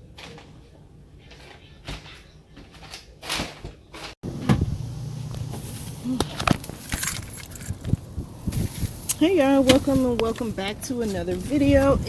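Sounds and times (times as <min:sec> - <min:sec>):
steady low hum: 0:04.3 - 0:11.3.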